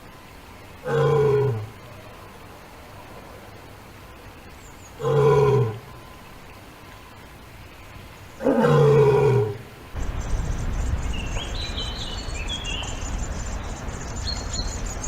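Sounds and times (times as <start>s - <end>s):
animal calling: 0.8s - 6.3s, 8.4s - 9.8s.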